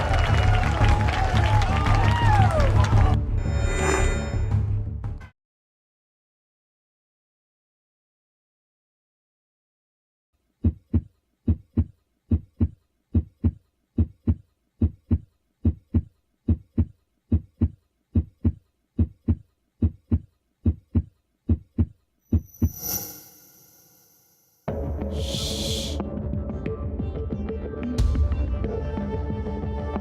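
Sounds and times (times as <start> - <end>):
whoosh with ringing high tone: 3.4 - 4.6, 22.3 - 24.6
heartbeat thumps: 10.6 - 22.8.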